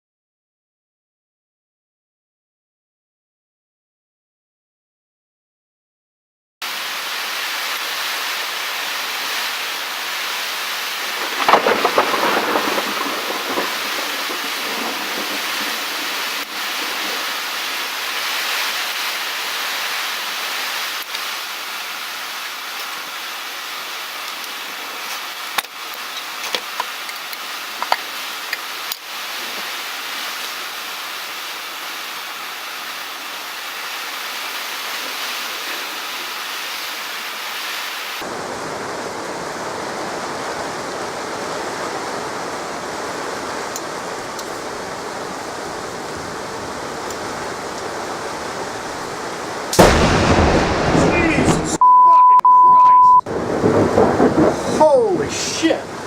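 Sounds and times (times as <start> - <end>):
heavy rain: 6.6 - 51.8, 53.1 - 56.0
crackling thunder: 11.0 - 18.1, 49.8 - 51.8, 53.3 - 54.9
sharp thunder cracks: 11.1 - 17.2, 49.8 - 51.8, 53.3 - 54.8.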